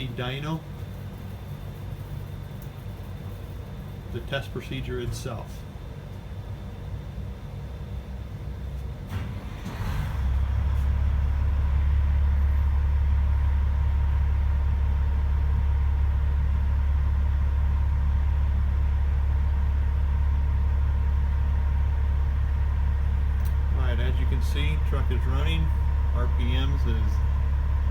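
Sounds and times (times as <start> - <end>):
truck engine starting and idling: 6.5 - 27.9.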